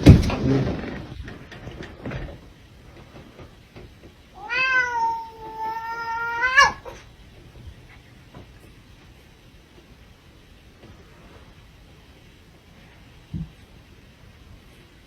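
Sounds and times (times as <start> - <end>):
cat meowing: 4.4 - 7.0.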